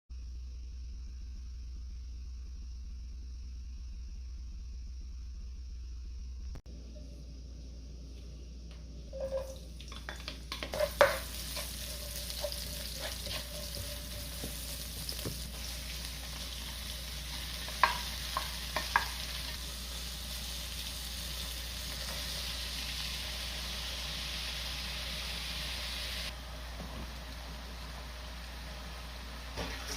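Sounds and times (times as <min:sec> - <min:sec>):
food sizzling in frying pan: 0:09.1 - 0:29.9
spatula knocking on pan: 0:09.3 - 0:15.5, 0:17.6 - 0:19.4.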